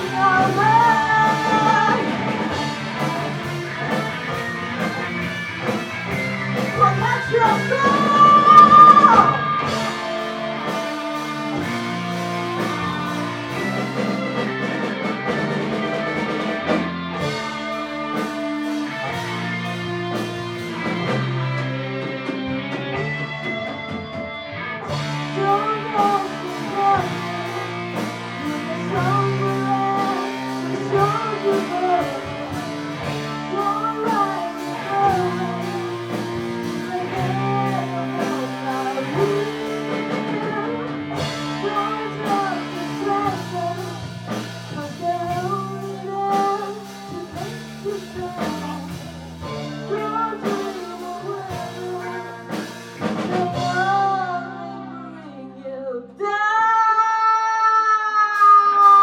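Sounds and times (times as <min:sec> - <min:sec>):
electric guitar held note bending: 0:00.0 - 0:44.4
live rock band playing: 0:00.0 - 0:56.3, 0:57.8 - 0:59.0.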